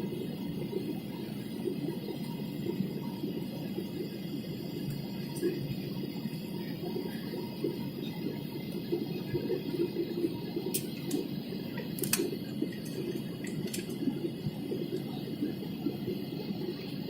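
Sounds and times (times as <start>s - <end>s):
airliner cabin engine drone: 0.0s - 17.0s
faint clicks: 10.6s - 14.1s.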